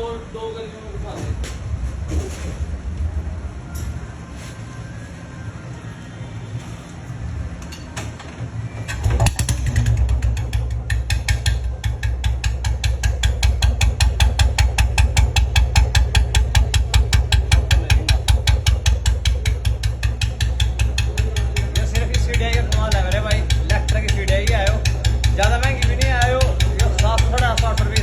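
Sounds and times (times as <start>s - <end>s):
motorcycle engine starting and idling: 7.9s - 28.0s.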